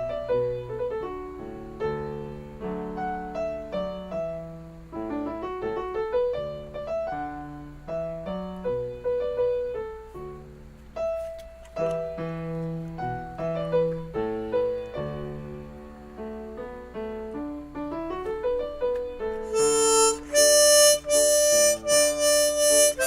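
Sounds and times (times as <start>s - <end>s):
slow piano melody: 0.0s - 23.0s.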